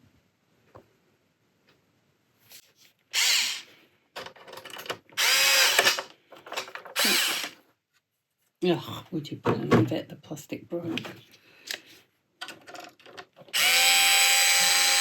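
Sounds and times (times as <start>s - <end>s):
electric screwdriver whirring: 3.2s - 3.7s, 5.2s - 6.1s, 7.0s - 7.6s, 13.5s - 15.0s.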